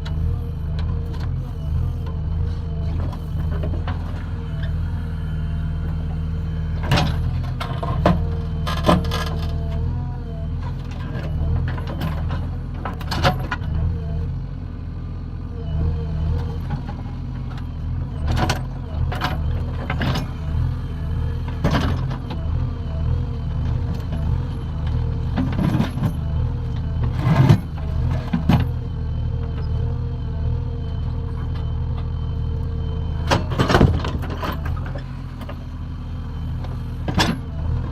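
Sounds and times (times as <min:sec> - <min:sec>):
diesel engine running: 0:00.0 - 0:37.9.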